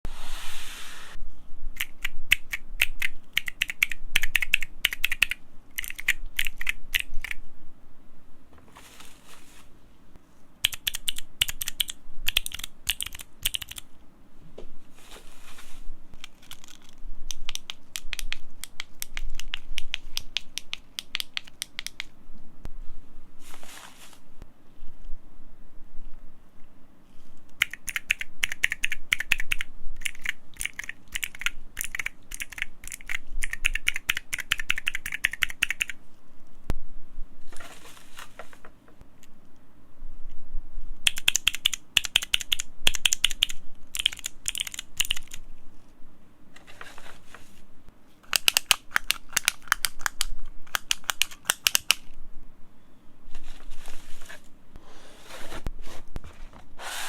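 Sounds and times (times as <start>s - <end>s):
handling rustles: 8.5s - 9.9s, 14.5s - 16.4s, 23.4s - 24.3s, 46.6s - 47.7s, 53.3s - 57.0s.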